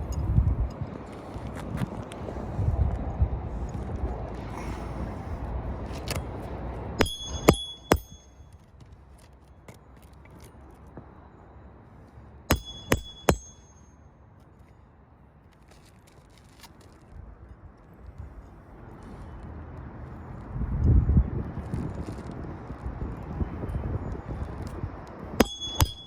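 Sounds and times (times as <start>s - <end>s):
hammer striking metal: 7.0s - 8.5s, 12.5s - 14.0s, 25.4s - 26.0s.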